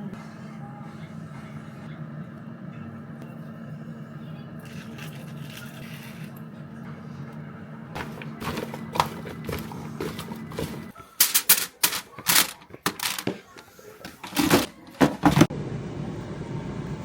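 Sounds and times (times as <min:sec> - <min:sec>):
steady background hum: 0:00.0 - 0:17.0.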